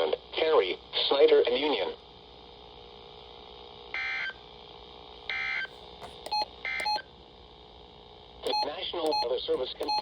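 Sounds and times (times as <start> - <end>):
faint steady hum: 0.0 - 10.0
clicky beeps: 6.2 - 7.0, 8.5 - 10.0.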